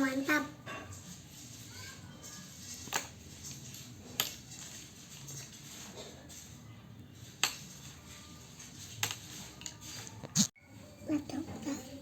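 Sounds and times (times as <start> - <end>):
tableware clinking: 2.2 - 6.6.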